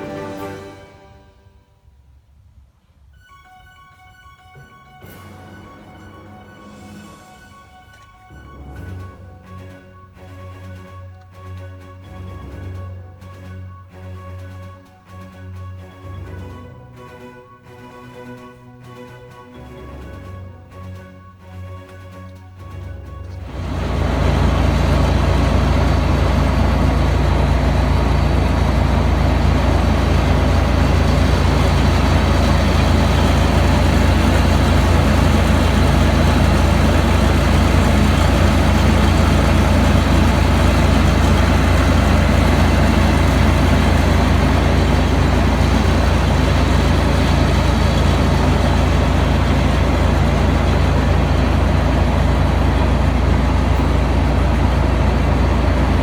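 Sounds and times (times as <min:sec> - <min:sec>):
diesel engine humming: 0:23.3 - 0:56.0.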